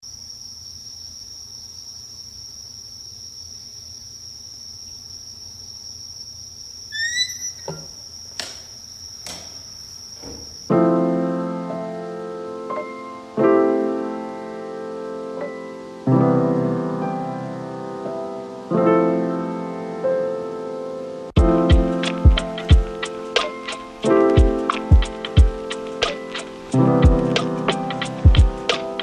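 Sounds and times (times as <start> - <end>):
high insect trill: 0.0 - 10.8
short rising chirps: 6.9 - 7.8
knocks: 7.6 - 10.7.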